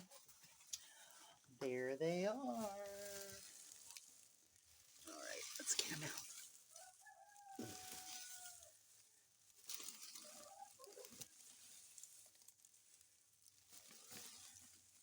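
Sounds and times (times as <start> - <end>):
hen clucking: 10.0 - 11.3.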